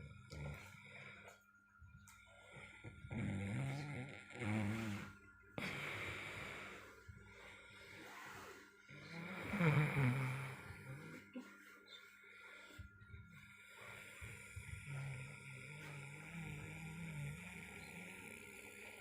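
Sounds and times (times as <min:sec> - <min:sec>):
man snoring: 0:00.0 - 0:00.9, 0:02.5 - 0:06.9, 0:07.9 - 0:11.2, 0:13.4 - 0:19.0.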